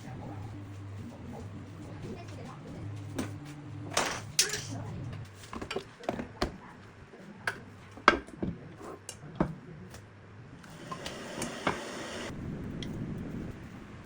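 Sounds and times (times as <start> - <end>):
dishes knocking and clicking: 7.5 - 8.6.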